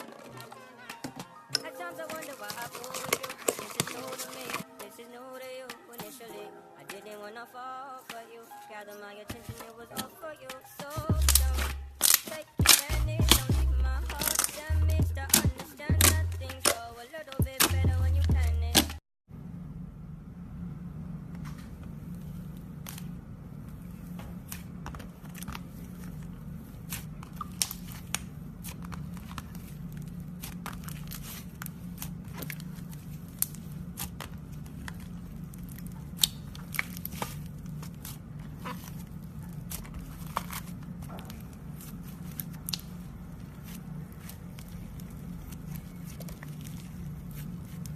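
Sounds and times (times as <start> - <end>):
slime crackling and popping: 2.0 - 4.7, 11.1 - 19.0, 24.0 - 47.9
steady low hum: 9.4 - 47.9.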